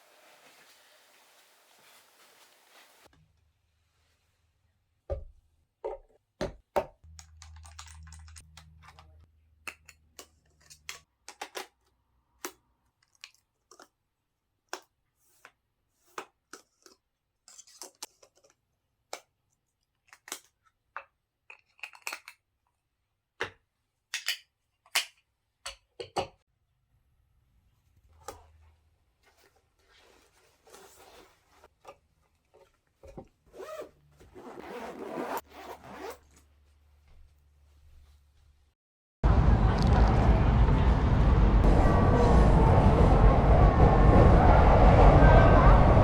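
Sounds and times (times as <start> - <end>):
low steady hum: 39.3 - 46.0.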